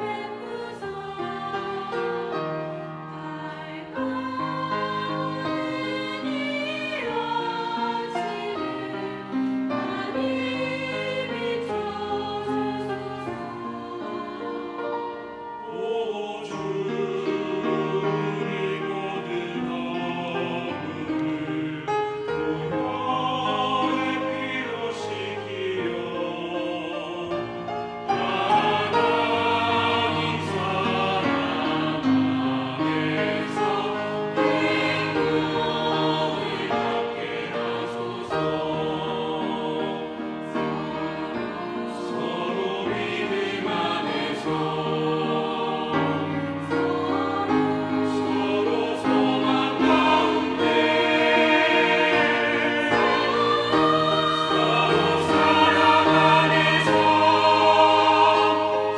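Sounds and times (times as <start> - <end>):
choir singing a hymn: 0.0 - 58.9.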